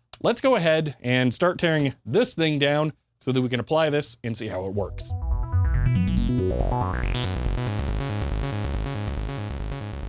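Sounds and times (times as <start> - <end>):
electronic synthesizer music: 4.8 - 10.0
rising synth sweep: 4.9 - 10.0.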